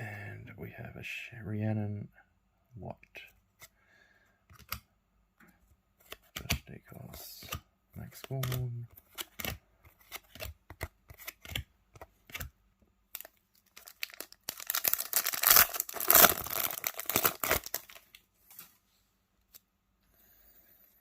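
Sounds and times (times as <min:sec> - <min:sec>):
cards clicking: 0:04.5 - 0:04.8, 0:07.4 - 0:12.5
foil wrapper tearing and crinkling: 0:13.2 - 0:18.1.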